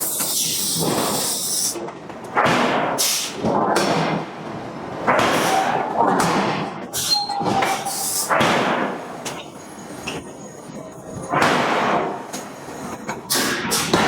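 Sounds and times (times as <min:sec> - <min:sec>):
forging hammer strokes with hiss: 0:00.0 - 0:01.8.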